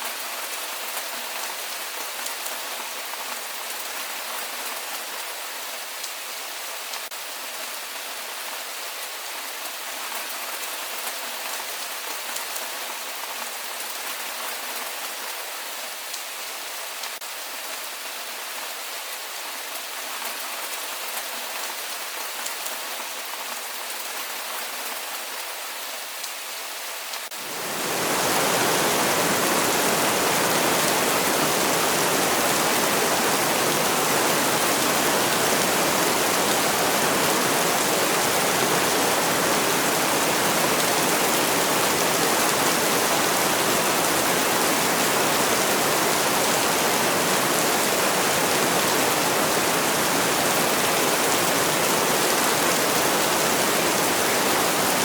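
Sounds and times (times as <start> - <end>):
heavy rain rushing: 27.3 - 55.0
rain pattering: 27.3 - 55.0.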